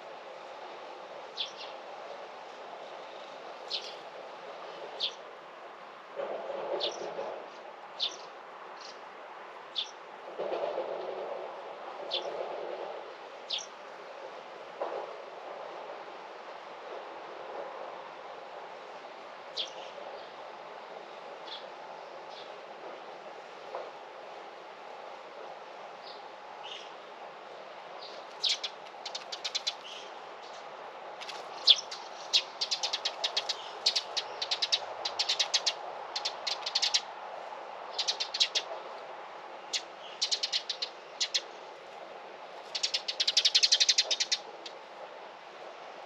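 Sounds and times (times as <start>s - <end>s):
faint background noise: 0.0s - 46.0s
small birds chirping: 2.9s - 4.1s, 8.0s - 9.0s, 9.8s - 10.0s, 19.6s - 20.3s, 28.0s - 37.1s, 37.9s - 38.7s, 39.6s - 41.6s, 42.7s - 44.5s.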